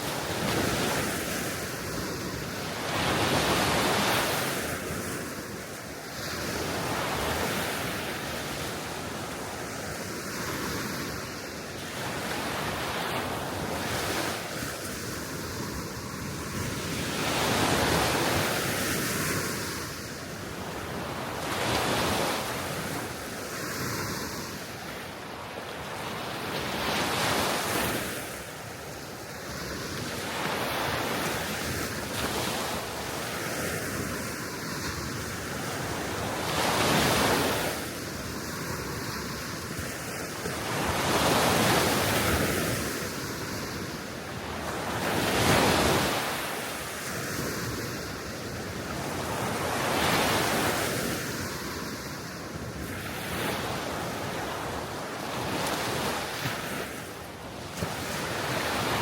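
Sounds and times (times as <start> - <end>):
steady wind: 0.0 - 59.0
waves washing onto shore: 0.0 - 59.0.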